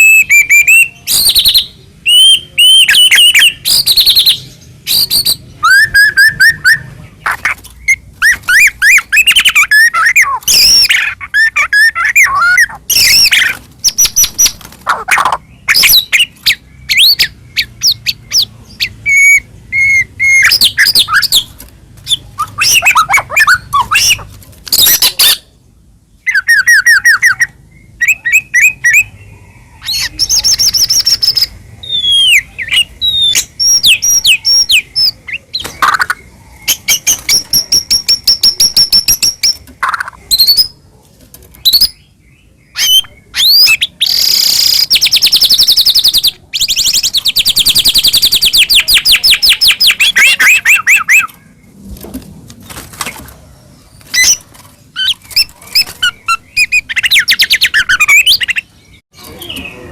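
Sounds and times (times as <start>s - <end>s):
songbird singing varied song: 0.0s - 40.8s.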